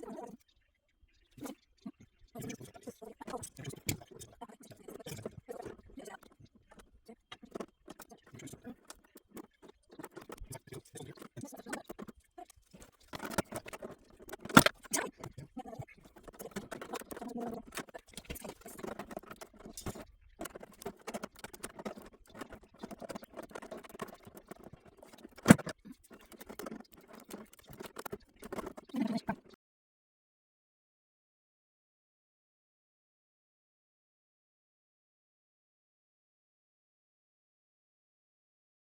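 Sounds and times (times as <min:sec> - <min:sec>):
plastic parts clicking and rattling: 0:02.4 - 0:29.5.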